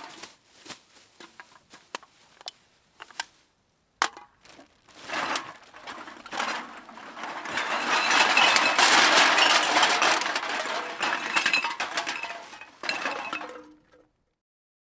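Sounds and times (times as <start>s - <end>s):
metal cans rattling in a bag: 0.0s - 0.4s, 4.0s - 14.0s.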